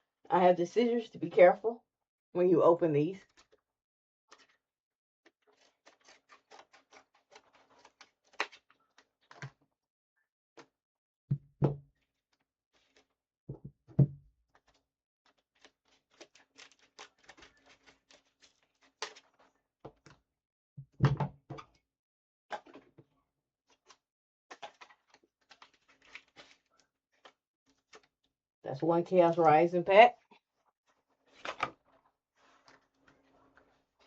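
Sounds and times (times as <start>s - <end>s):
plastic packaging crackling: 15.6s - 19.5s.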